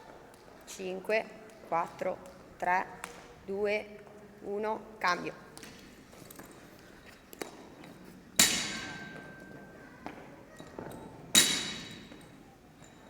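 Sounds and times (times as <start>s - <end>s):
metal weights clanging on floor: 8.4s - 10.0s, 10.6s - 13.0s.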